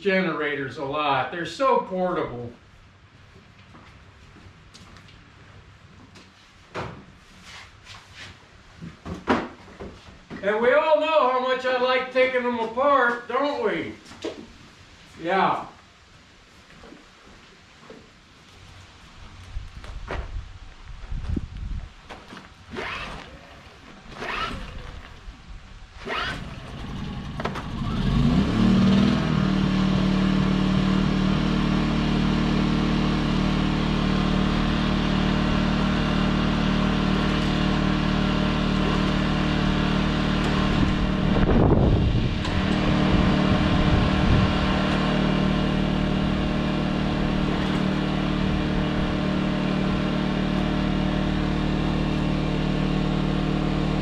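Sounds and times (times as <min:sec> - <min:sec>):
recoil starter cord rips: 0:22.2 - 0:25.3, 0:26.0 - 0:28.4
generator engine running: 0:22.2 - 0:54.0.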